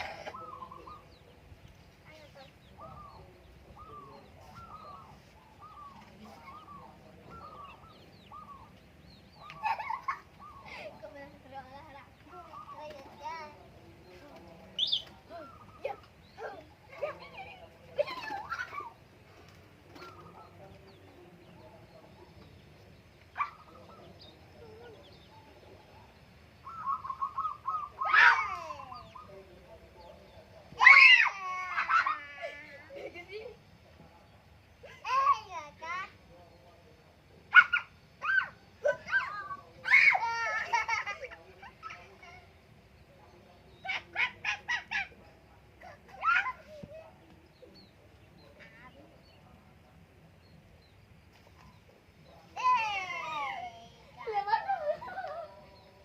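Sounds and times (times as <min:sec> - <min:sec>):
dove cooing: 0:00.0 - 0:01.1, 0:26.6 - 0:29.4
doves cooing: 0:00.0 - 0:01.5, 0:02.5 - 0:11.5, 0:12.2 - 0:14.1, 0:14.7 - 0:33.0
small birds chirping: 0:00.0 - 0:56.0.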